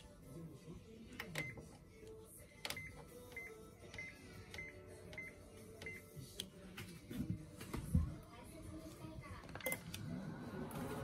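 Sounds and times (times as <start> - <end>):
microwave oven beeping: 1.3 - 1.6, 2.7 - 6.1, 9.6 - 11.0.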